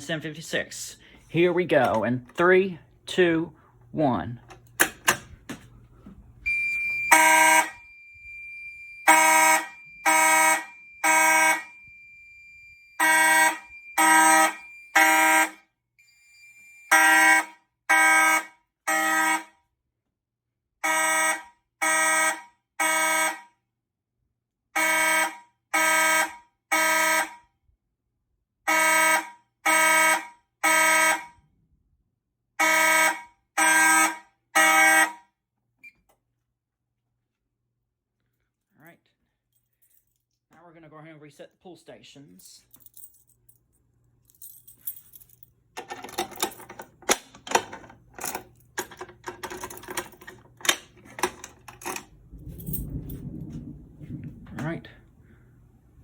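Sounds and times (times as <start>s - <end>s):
fire alarm horns blasting: 6.4s - 19.7s, 20.8s - 23.6s, 24.7s - 27.5s, 28.6s - 31.5s, 32.6s - 35.3s.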